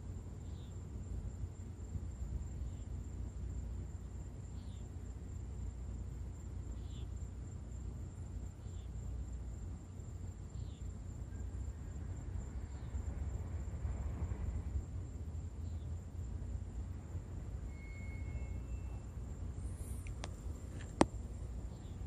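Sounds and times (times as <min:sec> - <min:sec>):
insect short chirp: 0:00.0 - 0:22.0
insect high-pitched trill: 0:04.4 - 0:05.0, 0:06.3 - 0:07.4, 0:17.4 - 0:20.6.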